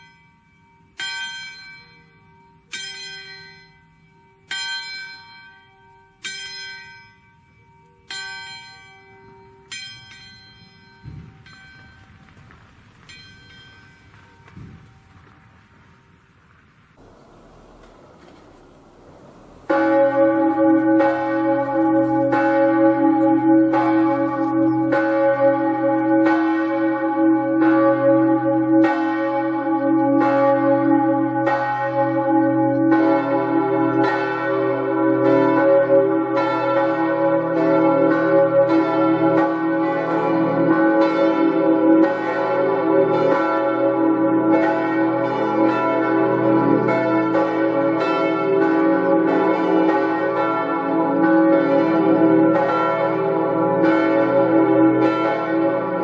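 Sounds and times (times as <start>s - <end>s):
church bells ringing: 0.0s - 16.3s, 17.0s - 56.0s.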